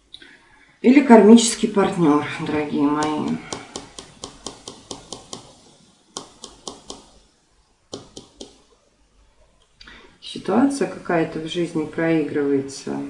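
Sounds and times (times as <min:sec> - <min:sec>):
light sharp taps: 0:03.0 - 0:05.6, 0:06.2 - 0:07.1, 0:07.9 - 0:08.6.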